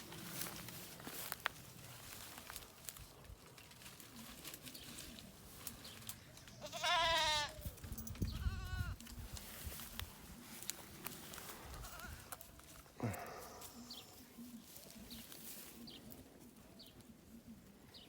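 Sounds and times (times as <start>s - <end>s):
goat bleating: 6.6s - 7.6s, 8.4s - 9.0s, 11.7s - 12.4s.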